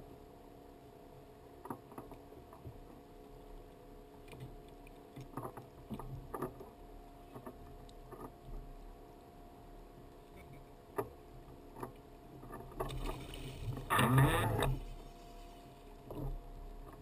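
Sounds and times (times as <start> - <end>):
steady low hum: 0.0 - 17.0
paddle splashing water: 12.7 - 16.4.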